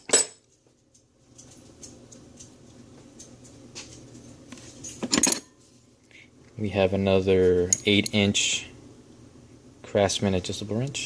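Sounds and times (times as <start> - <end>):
metal wrenches clinking: 4.9 - 5.5.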